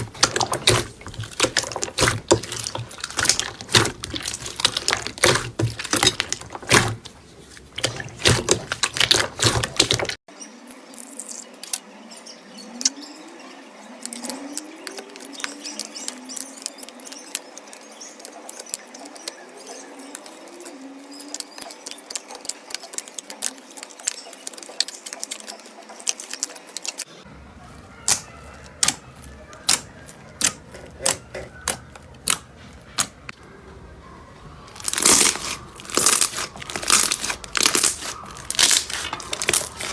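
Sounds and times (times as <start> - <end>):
slime squished by hand: 0.0 - 10.2, 28.0 - 33.2, 34.7 - 39.9.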